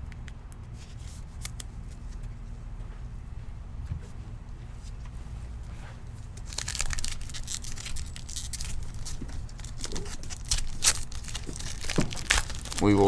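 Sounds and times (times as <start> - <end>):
plastic wrapper crinkling and tearing: 6.4 - 13.0.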